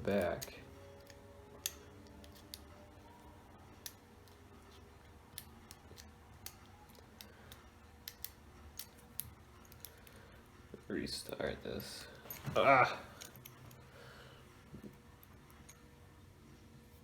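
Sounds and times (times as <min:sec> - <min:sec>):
lock pick metallic clicks: 0:00.2 - 0:02.7, 0:05.3 - 0:10.2.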